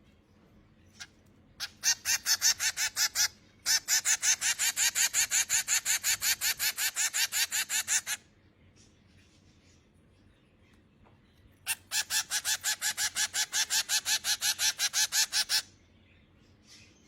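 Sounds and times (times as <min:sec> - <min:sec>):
baby finch begging calls: 0:01.0 - 0:08.2, 0:11.6 - 0:15.7.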